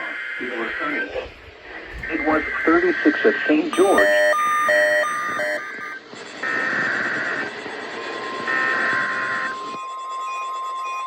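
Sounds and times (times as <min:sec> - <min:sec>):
steady warning alert tone: 0:00.6 - 0:03.0, 0:03.7 - 0:06.0.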